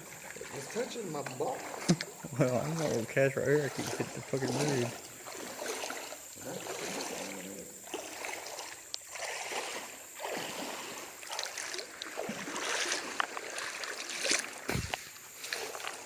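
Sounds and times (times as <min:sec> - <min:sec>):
water sloshing and splashing: 0:00.0 - 0:16.0
dull thump: 0:14.7 - 0:15.1.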